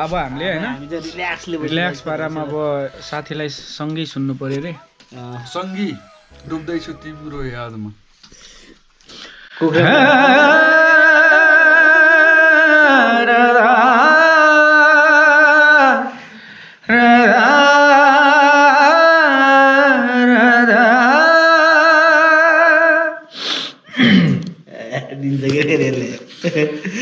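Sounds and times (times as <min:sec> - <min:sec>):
person singing slow song: 0:04.7 - 0:07.6, 0:09.4 - 0:23.3.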